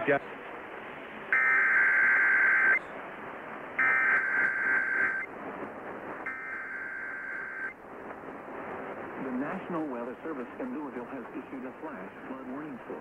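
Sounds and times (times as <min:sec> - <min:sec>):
radio hiss: 0:01.0 - 0:03.0, 0:03.8 - 0:05.3, 0:06.2 - 0:07.8, 0:09.2 - 0:13.0
digital data tone bursts: 0:01.3 - 0:02.8, 0:03.8 - 0:05.3, 0:06.3 - 0:07.8.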